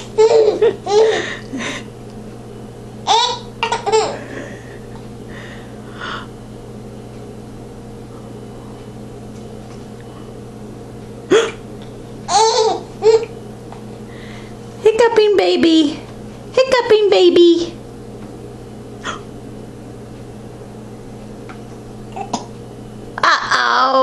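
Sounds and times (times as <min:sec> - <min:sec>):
baby giggling: 0:00.2 - 0:01.2, 0:03.1 - 0:04.4, 0:12.3 - 0:13.3.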